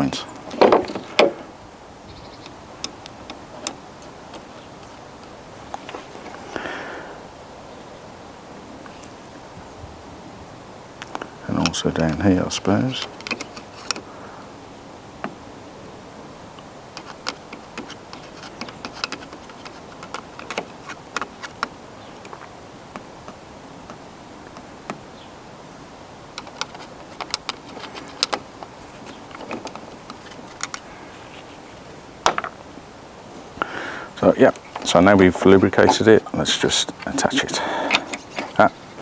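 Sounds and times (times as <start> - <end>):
steady background hiss: 0.0 - 39.0
metallic latch clicks and taps: 17.0 - 22.4.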